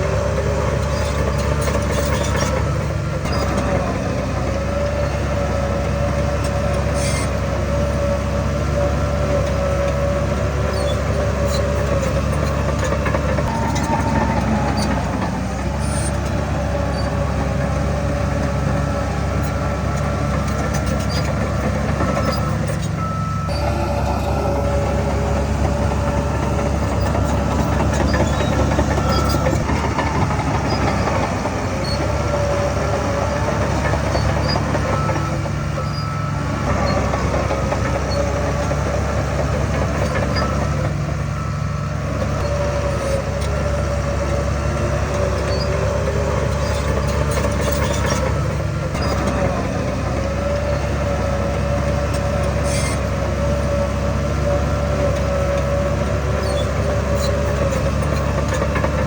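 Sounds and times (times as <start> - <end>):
heavy diesel machinery running: 0.0 - 59.0
high whine: 23.5 - 29.8.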